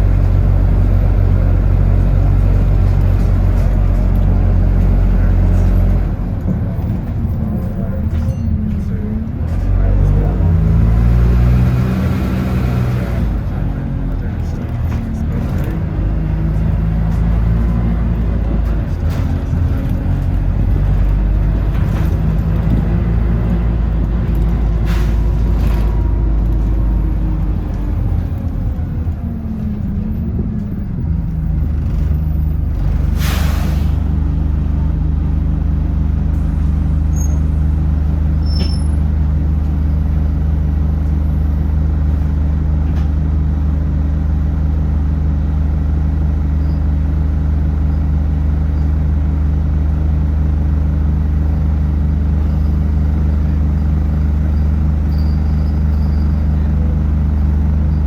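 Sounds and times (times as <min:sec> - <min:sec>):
bus engine running: 0:00.0 - 0:58.0
air brakes hissing: 0:33.0 - 0:34.2.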